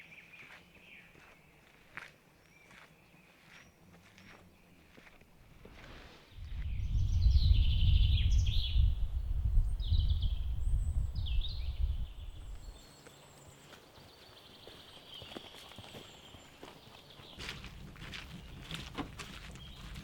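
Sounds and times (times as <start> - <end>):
small birds chirping: 0.0 - 20.0
wind gusting on microphone: 5.5 - 12.8
low rumble: 5.7 - 12.6.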